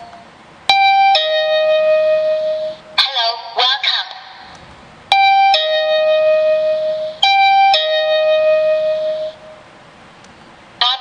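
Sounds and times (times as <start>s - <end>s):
electronic two-tone doorbell chime: 0.0s - 2.8s, 5.1s - 9.4s.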